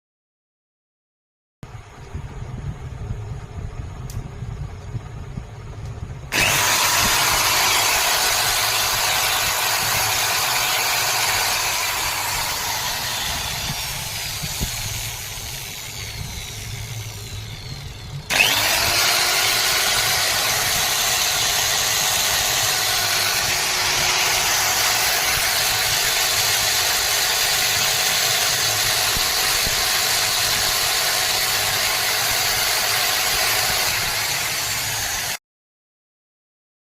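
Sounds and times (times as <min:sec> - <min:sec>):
electric grinder motor whining: 0:06.3 - 0:35.4.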